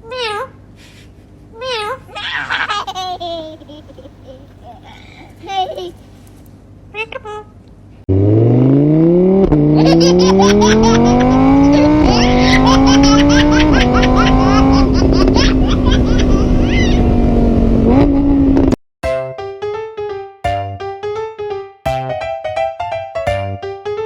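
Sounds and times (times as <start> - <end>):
car engine accelerating hard: 8.1 - 18.8.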